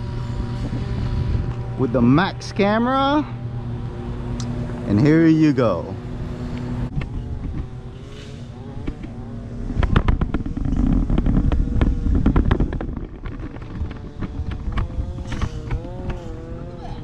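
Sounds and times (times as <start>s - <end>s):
electric motors whining: 0.0s - 17.0s
wheels rolling rumble: 0.0s - 17.0s
sharp knocks and rattles: 8.6s - 17.0s.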